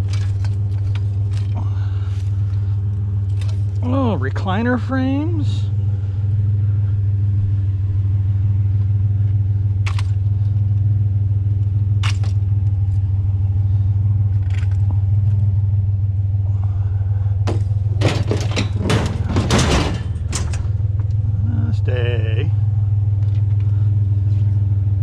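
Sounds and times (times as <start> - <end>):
scrap metal clattering: 0.0 - 3.8, 17.4 - 20.9
truck engine humming: 0.0 - 25.0.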